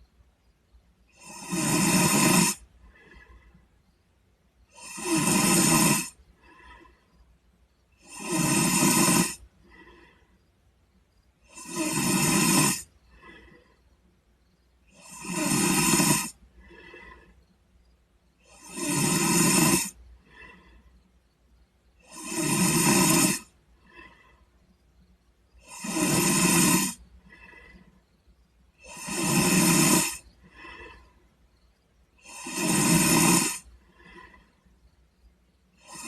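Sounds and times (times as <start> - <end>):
boy snoring: 1.1 - 3.5, 4.7 - 7.1, 8.0 - 10.3, 11.4 - 13.8, 14.8 - 17.5, 18.4 - 20.8, 22.0 - 24.4, 25.6 - 28.0, 28.8 - 31.2, 32.2 - 34.6, 35.8 - 36.0
soft breathing: 2.5 - 4.7, 6.0 - 8.0, 8.6 - 11.4, 12.8 - 14.9, 16.1 - 18.7, 19.6 - 21.9, 23.3 - 35.8.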